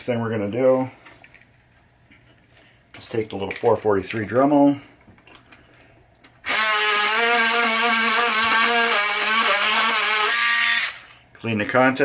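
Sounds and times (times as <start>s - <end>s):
rotary tool whining and grinding: 6.4s - 11.1s.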